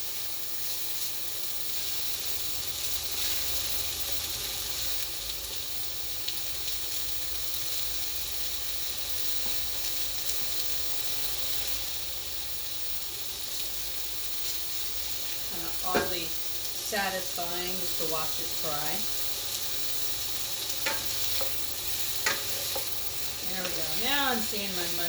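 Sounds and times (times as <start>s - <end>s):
stir fry sizzling in a pan: 0.0s - 25.0s.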